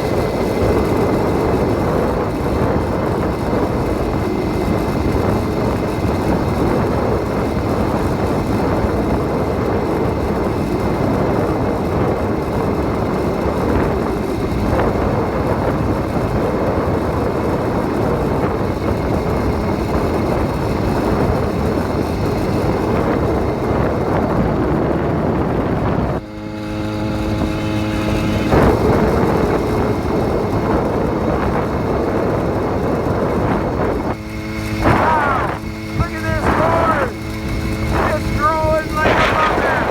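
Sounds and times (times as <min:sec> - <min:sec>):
wind rushing over microphone: 0:22.5 - 0:39.9.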